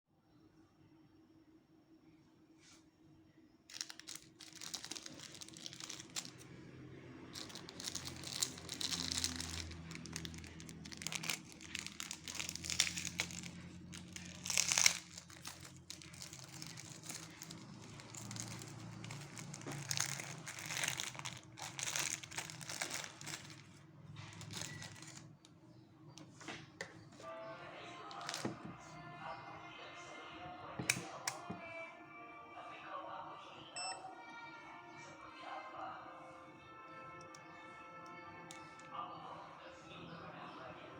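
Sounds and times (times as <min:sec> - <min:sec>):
packaging crinkling and rustling: 0:03.7 - 0:06.5, 0:07.3 - 0:25.5, 0:28.1 - 0:28.7.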